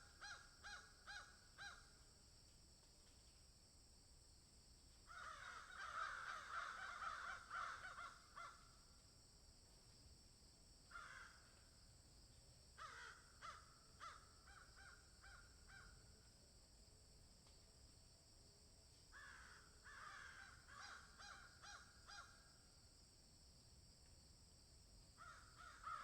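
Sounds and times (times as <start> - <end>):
birds calling harshly: 5.2 - 8.5.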